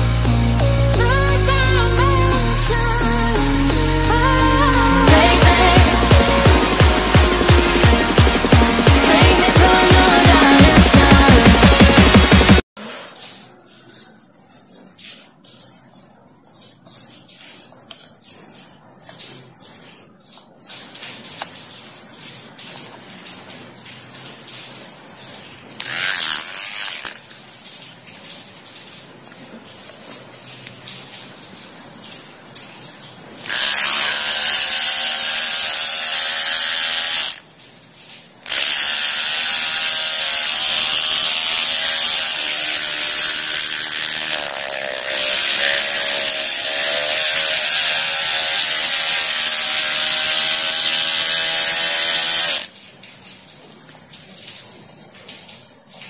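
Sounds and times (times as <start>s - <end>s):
hair clipper buzzing: 5.0s - 12.6s, 25.8s - 27.2s, 33.4s - 37.4s, 38.4s - 52.7s
clicking and handling: 25.8s - 27.2s.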